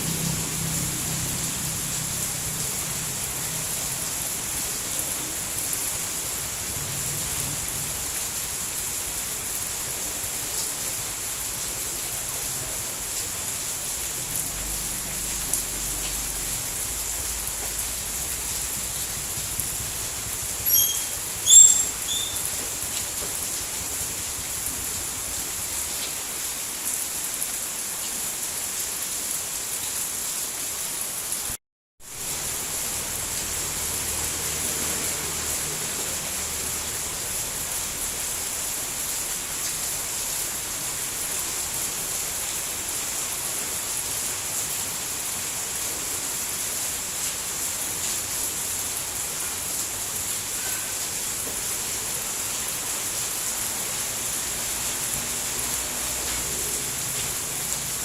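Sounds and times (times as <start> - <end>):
heavy rain: 0.0 - 58.0
short high chirps: 20.6 - 22.5.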